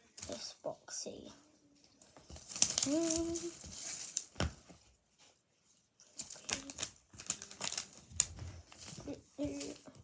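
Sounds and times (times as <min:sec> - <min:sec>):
packaging rustling: 0:06.2 - 0:09.8.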